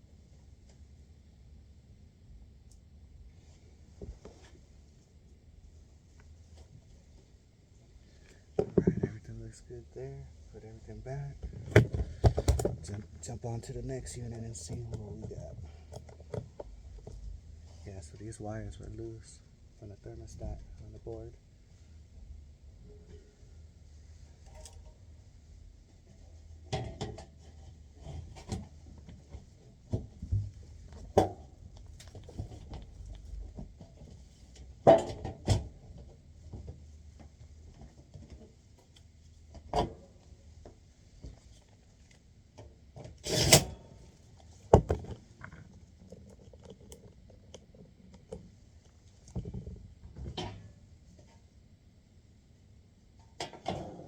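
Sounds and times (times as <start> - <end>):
faint low hum: 0.0 - 54.0.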